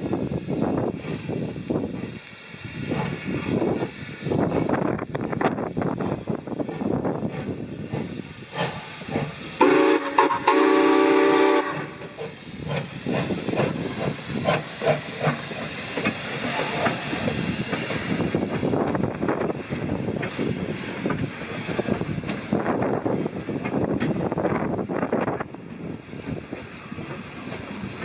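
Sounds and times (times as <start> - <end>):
steam exhaust hissing and chuffing: 0.0 - 28.0
steam locomotive whistle: 9.6 - 12.2.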